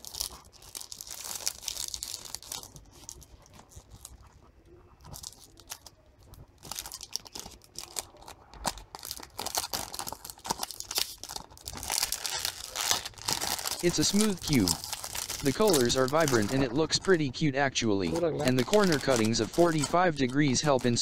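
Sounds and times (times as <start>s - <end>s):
plastic crinkling and clicking: 0.0s - 16.6s.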